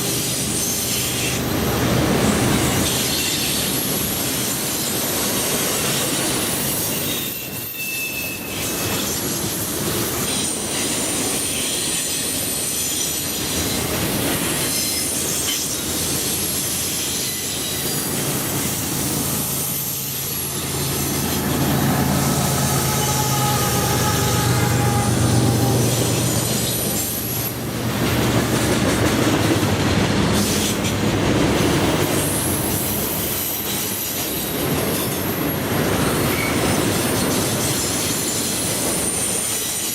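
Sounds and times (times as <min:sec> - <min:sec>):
train wheels squealing on rail: 0:00.0 - 0:27.6, 0:29.4 - 0:39.9
train rumble: 0:08.4 - 0:39.9.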